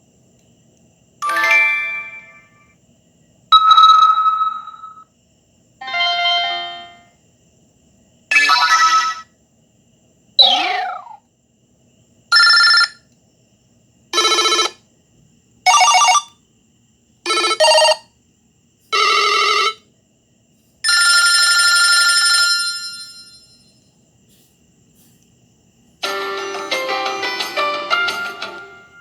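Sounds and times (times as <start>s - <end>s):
phone alert tones: 3.6s - 5.0s, 5.8s - 7.1s.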